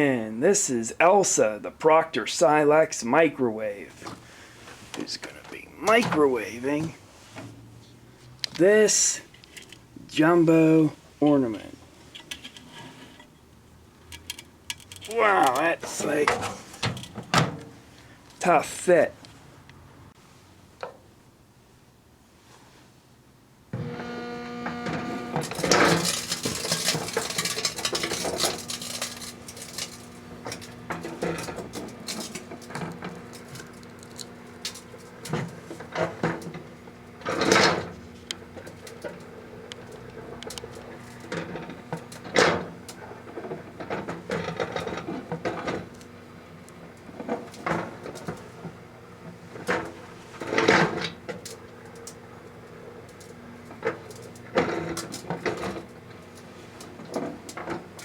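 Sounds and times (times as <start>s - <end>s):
microwave oven humming: 23.7s - 58.0s
plastic crackling and popping: 25.2s - 36.7s.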